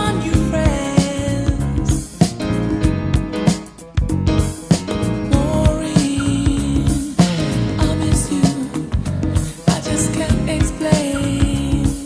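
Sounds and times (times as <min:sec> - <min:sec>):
slow soul music: 0:00.0 - 0:12.0.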